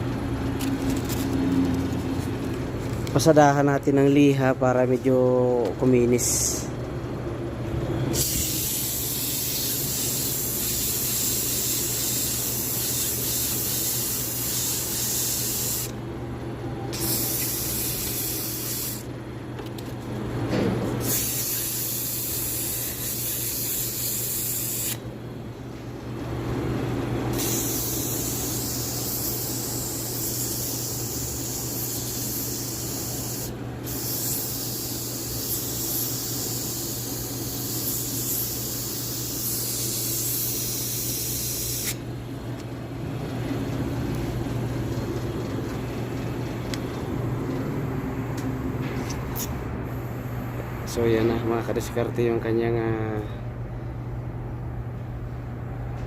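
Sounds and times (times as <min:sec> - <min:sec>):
sandpaper on spinning rotor: 0:08.2 - 0:15.9, 0:17.0 - 0:19.1, 0:21.0 - 0:25.0, 0:27.4 - 0:42.0.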